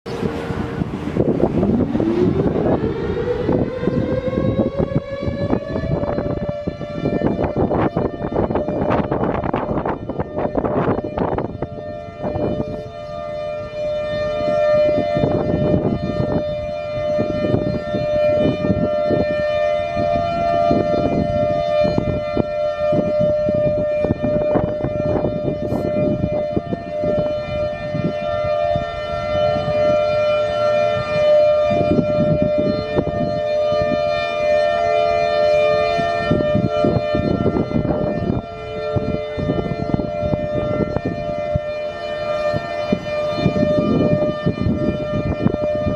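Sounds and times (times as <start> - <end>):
warning siren steady tone: 0.0 - 45.9
low rumbling noise: 0.1 - 34.0.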